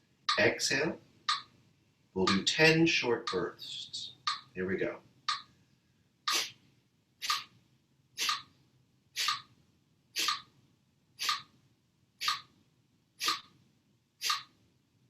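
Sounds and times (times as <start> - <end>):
forceful nasal exhalations: 6.3 - 6.6, 13.2 - 13.5.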